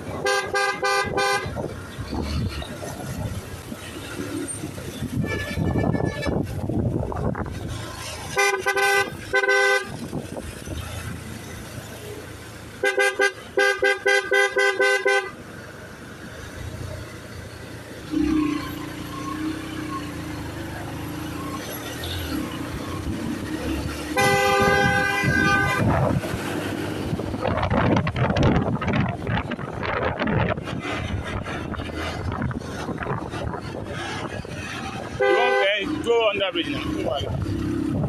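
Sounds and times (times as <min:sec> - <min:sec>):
traffic noise: 0:00.0 - 0:38.0
vehicle horns honking: 0:00.1 - 0:01.7, 0:05.0 - 0:06.7, 0:08.3 - 0:10.1, 0:12.8 - 0:15.4, 0:24.1 - 0:26.2, 0:35.1 - 0:36.0.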